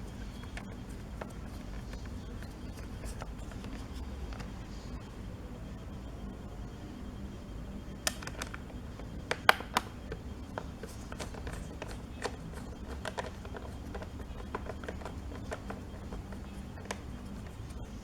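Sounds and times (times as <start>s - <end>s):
steady low hum: 0.0s - 18.0s
screwdriver clicking on laptop cover: 10.8s - 17.6s.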